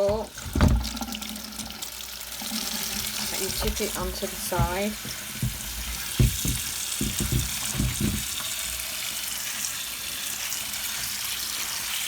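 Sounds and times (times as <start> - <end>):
tap water running and splashing: 0.0 - 12.0.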